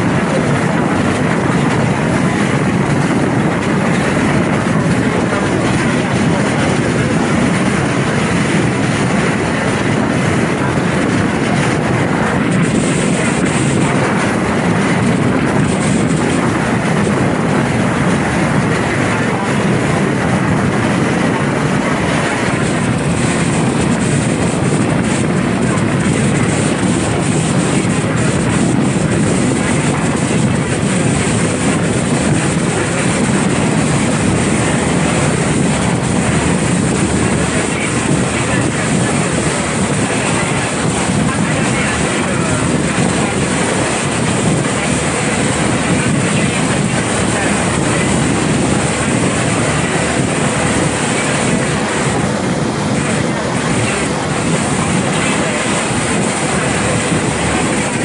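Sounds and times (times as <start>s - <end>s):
boat engine drone: 0.0s - 58.0s
rushing water: 0.0s - 58.0s
wind: 0.0s - 58.0s.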